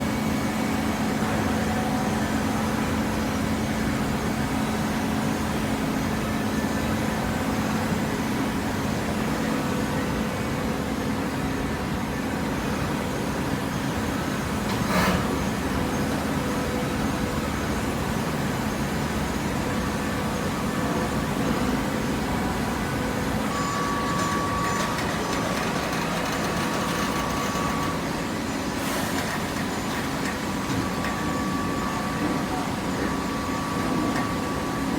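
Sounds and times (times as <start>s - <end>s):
baler machine hum: 13.9s - 34.9s.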